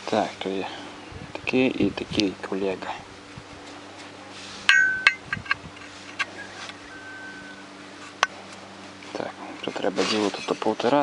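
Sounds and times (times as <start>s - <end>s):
low steady hum: 0.0s - 11.0s
ball bearings clinking on metal: 4.7s - 5.4s.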